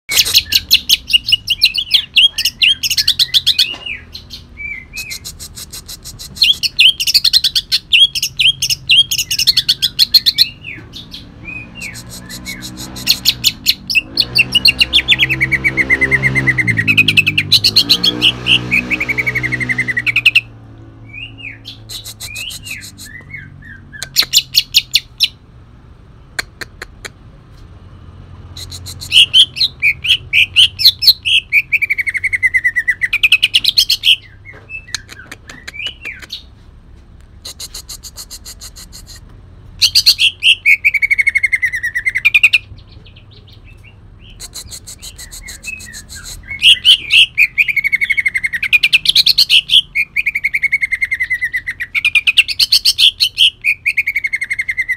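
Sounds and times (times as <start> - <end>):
bird singing harsh rapid notes: 0.1 - 25.5, 28.4 - 36.6, 37.4 - 54.9.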